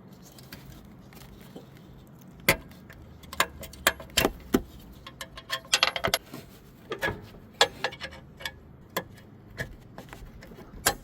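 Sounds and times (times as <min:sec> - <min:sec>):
small metal parts clinking: 0:04.9 - 0:06.2.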